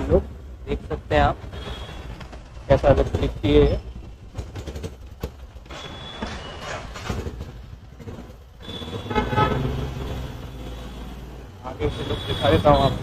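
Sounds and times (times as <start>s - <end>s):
street traffic engines: 0.0s - 13.0s
vehicle horn honking: 8.6s - 10.0s, 11.8s - 13.0s.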